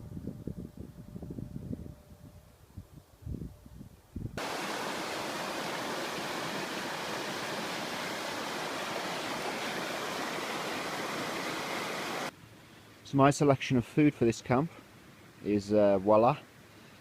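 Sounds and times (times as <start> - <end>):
wind buffeting microphone: 0.0 - 8.4
flowing water rushing: 4.4 - 12.3.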